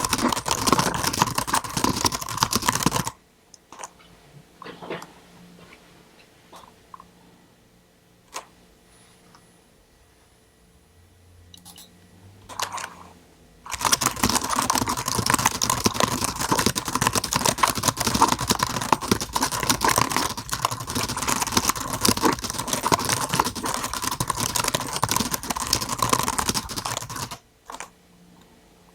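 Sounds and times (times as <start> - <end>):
mechanical keyboard typing: 0.0 - 3.2, 13.7 - 27.9.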